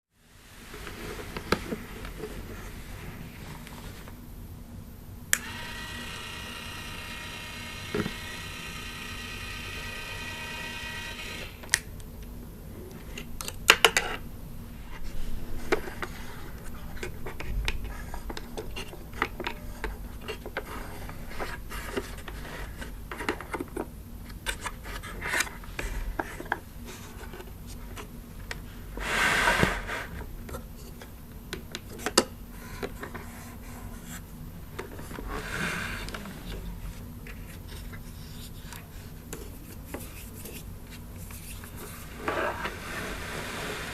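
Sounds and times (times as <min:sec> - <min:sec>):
rubbing scrape: 0:29.0 - 0:30.2, 0:35.0 - 0:43.9.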